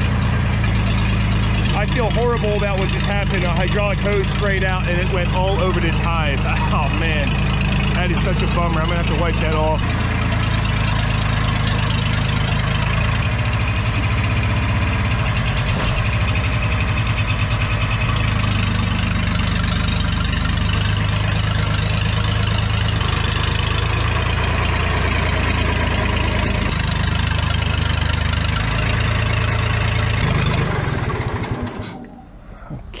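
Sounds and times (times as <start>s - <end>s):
truck engine running: 0.0s - 33.0s.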